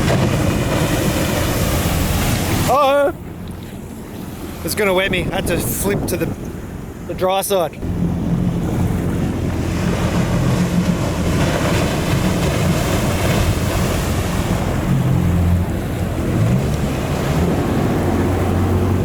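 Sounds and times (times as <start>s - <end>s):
wind on microphone: 0.0s - 7.0s
boat engine running: 0.0s - 19.0s
waves and water washing: 0.0s - 19.0s.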